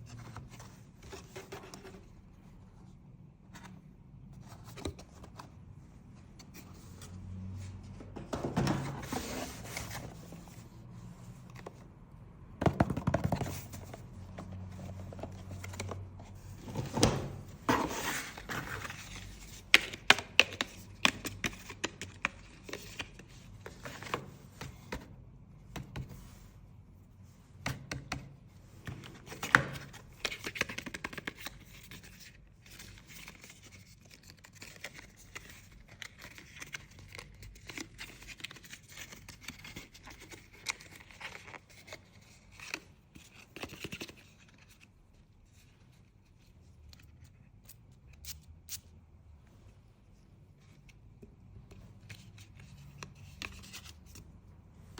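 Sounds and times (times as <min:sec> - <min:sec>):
packaging rustling and scraping: 0:08.2 - 0:10.8, 0:12.9 - 0:20.1.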